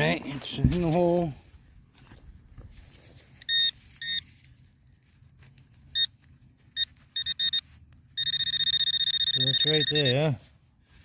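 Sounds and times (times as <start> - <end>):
metal detector pinpointer beeping: 3.3 - 4.4, 5.9 - 10.5.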